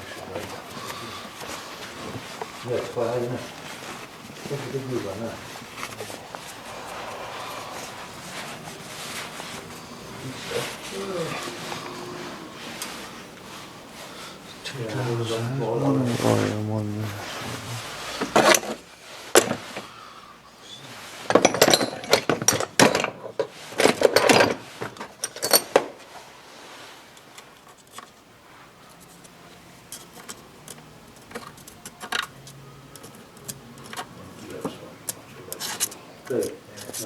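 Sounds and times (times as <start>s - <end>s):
metal tools clinking and clattering: 21.3s - 24.6s, 25.2s - 25.8s.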